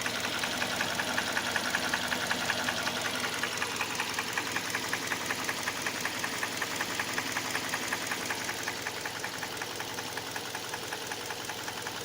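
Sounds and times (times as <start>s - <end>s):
car engine running: 0.0s - 12.0s
fast even engine knock: 0.1s - 12.0s.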